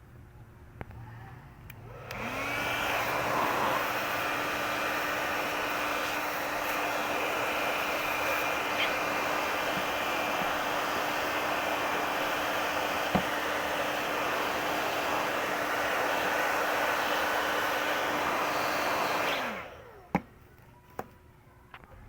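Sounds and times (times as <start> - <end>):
fan hum: 0.8 - 20.6
hot air blower rushing: 1.4 - 20.2.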